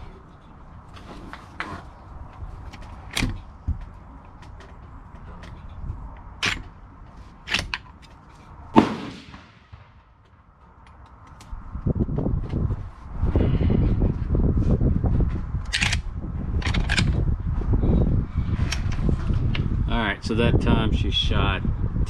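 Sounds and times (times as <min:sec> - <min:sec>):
rifle shots: 0:08.8 - 0:10.1.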